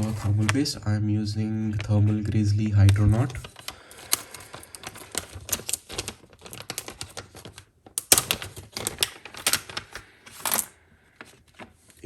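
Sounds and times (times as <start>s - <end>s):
plastic packaging clicking: 2.8s - 12.0s.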